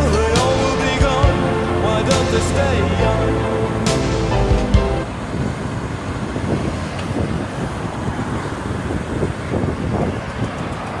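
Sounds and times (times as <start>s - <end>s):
road traffic rumble: 0.0s - 11.0s
wind buffeting microphone: 5.0s - 11.0s.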